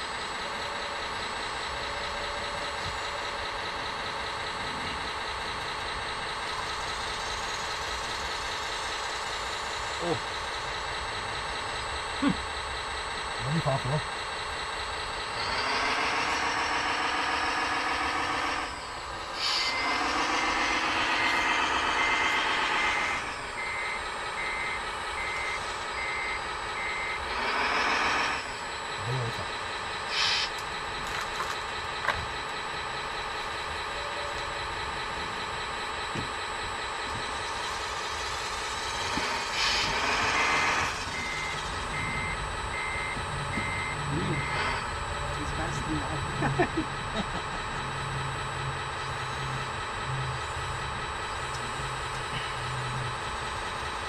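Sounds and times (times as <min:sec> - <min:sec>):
model machinery motor hum with whine: 0:00.0 - 0:54.0
reverse alarm beeping: 0:11.2 - 0:31.0, 0:32.4 - 0:54.0.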